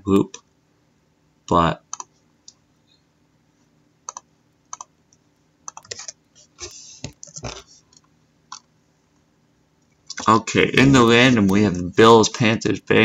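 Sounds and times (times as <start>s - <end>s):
computer keyboard typing: 1.9s - 2.1s, 4.1s - 4.9s, 5.6s - 6.2s, 7.1s - 8.7s.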